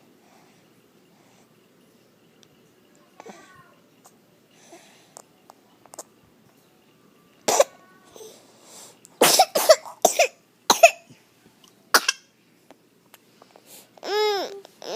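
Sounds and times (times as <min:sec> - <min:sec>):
small child coughing: 0:07.5 - 0:07.9, 0:09.2 - 0:11.1, 0:12.0 - 0:12.3.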